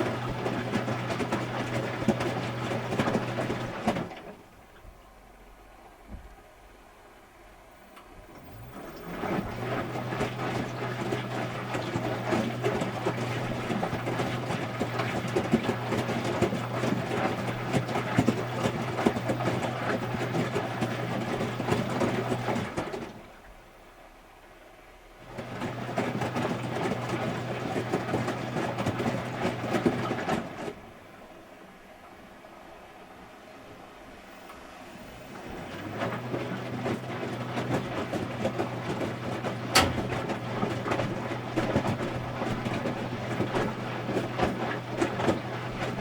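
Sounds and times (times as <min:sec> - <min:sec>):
washing machine drum turning: 0:00.0 - 0:04.4, 0:08.4 - 0:23.0, 0:35.4 - 0:46.0.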